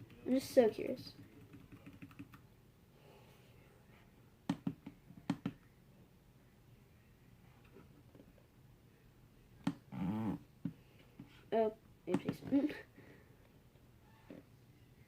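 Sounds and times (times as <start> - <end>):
keyboard keys clicking: 1.2 - 2.4.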